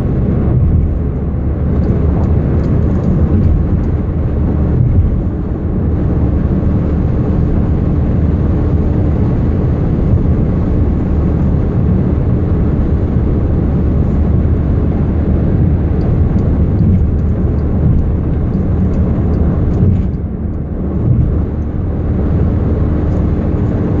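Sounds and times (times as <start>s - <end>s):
car engine low rumble: 0.0s - 24.0s
constant whine: 0.0s - 24.0s.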